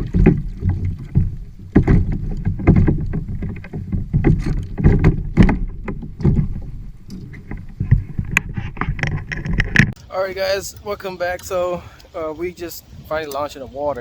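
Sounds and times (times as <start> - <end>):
water splashing against kayak hull: 0.0 - 10.0.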